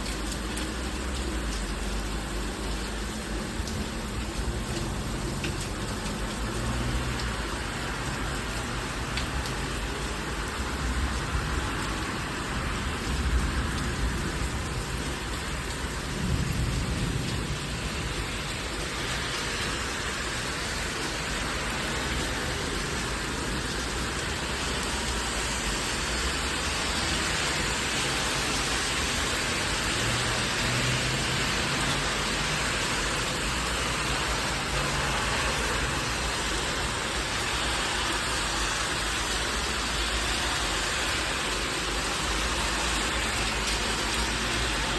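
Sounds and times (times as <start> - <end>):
heavy rain falling: 0.0 - 44.9
low thunder rumbles: 13.0 - 18.9.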